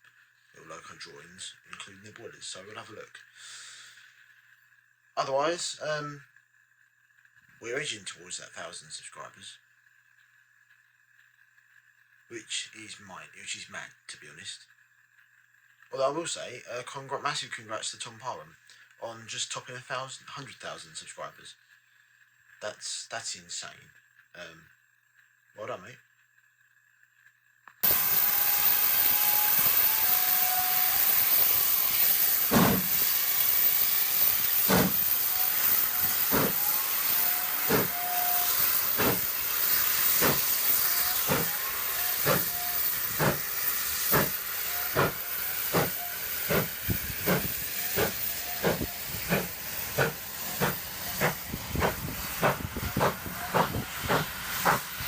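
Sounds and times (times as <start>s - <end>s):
steam hissing: 0.6s - 4.4s, 27.8s - 55.0s
locomotive exhaust chuffs: 27.8s - 55.0s.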